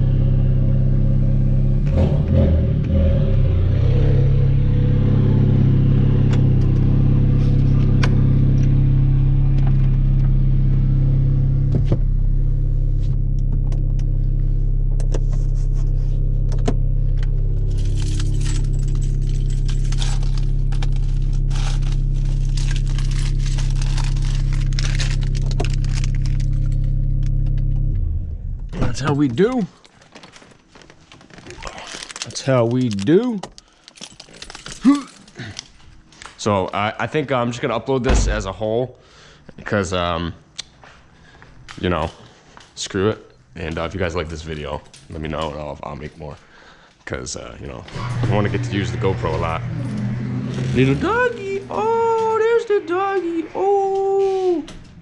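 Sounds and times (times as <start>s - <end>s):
car engine droning while driving: 0.0s - 30.2s, 47.6s - 55.0s
exhaust crackles and clicks: 1.6s - 4.7s, 5.3s - 37.0s, 40.5s - 55.0s.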